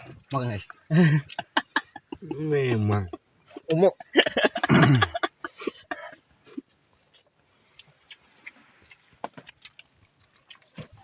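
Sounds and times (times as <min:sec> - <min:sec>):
chewing and lip-smacking: 0:06.6 - 0:11.0.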